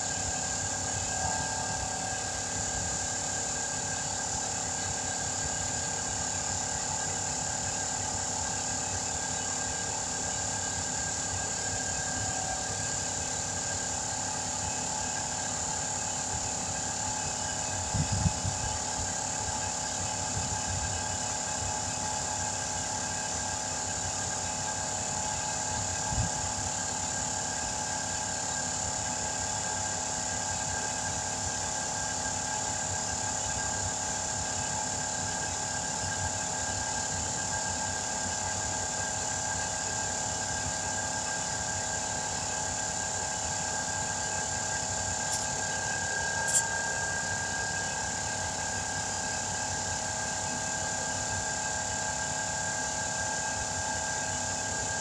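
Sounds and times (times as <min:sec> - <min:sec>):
steady machine hum: 0:42.2 - 0:50.4.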